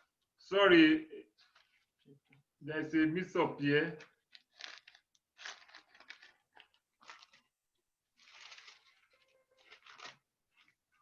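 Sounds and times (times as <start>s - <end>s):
pages rustling and turning: 4.2s - 11.0s.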